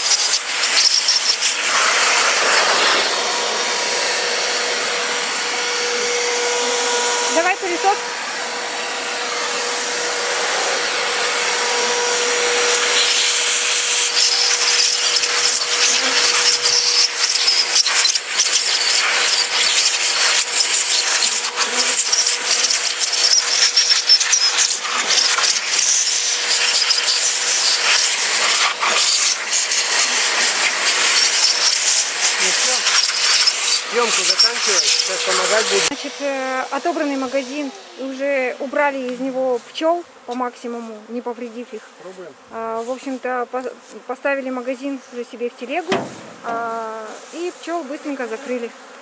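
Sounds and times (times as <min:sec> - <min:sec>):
vacuum blower rushing air: 0:00.0 - 0:39.0, 0:45.8 - 0:48.7
motor whine: 0:00.5 - 0:38.6, 0:45.8 - 0:46.8
short knocks: 0:45.9 - 0:46.6.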